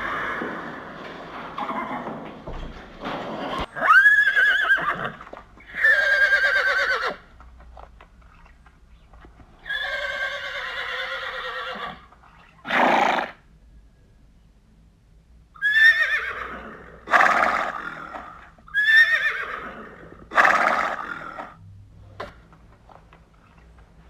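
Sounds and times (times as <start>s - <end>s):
horses whinnying: 0.0s - 7.3s, 9.6s - 13.4s, 15.6s - 21.6s.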